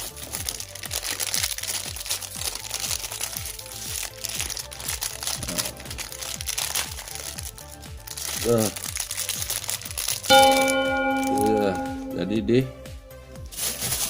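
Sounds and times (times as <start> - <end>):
plastic packaging crinkling: 0.0 - 10.4, 13.5 - 14.0
background music with steady beat: 0.0 - 14.0.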